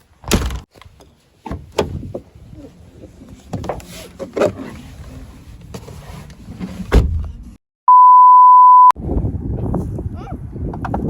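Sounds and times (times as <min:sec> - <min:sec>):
outdoor background noise: 0:00.0 - 0:07.6
electronic beep tone: 0:07.9 - 0:09.0.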